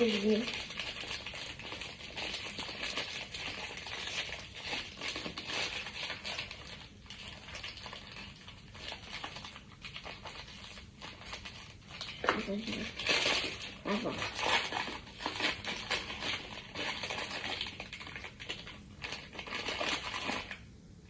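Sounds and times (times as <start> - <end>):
packaging tearing: 0.0 - 20.7
packaging crinkling and rustling: 0.0 - 20.8.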